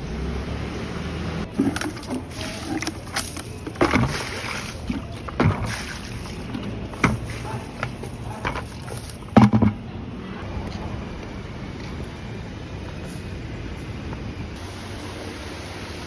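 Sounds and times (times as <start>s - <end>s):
water sloshing: 1.4s - 10.2s
bucket knocking: 1.5s - 10.0s.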